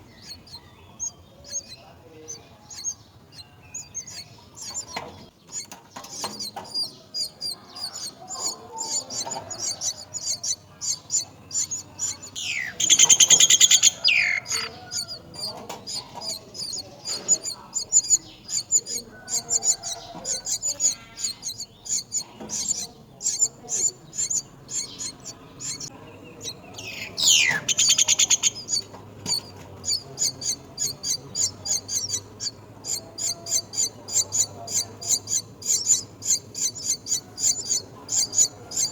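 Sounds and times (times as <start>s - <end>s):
nestling birds chirping: 0.0s - 38.9s
harsh rising bird call: 7.4s - 15.2s, 26.7s - 28.8s.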